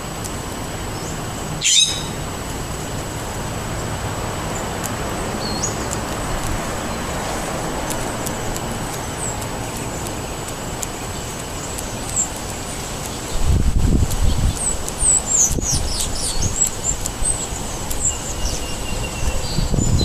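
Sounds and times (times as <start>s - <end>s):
wind with low rumble: 0.0s - 20.0s
faint high bird chirps: 1.0s - 2.2s.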